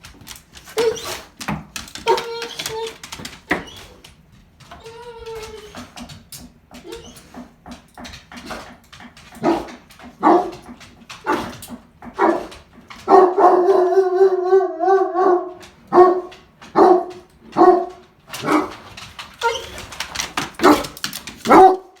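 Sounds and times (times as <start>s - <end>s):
dog barking and baying: 9.4s - 18.8s, 20.6s - 22.0s.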